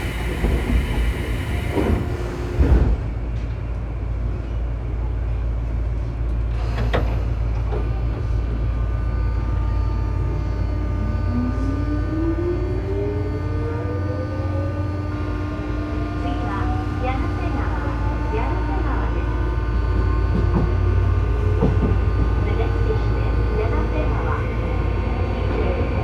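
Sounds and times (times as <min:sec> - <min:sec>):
rising train motor whine: 0:00.0 - 0:26.0
train hum and tones: 0:00.0 - 0:26.0.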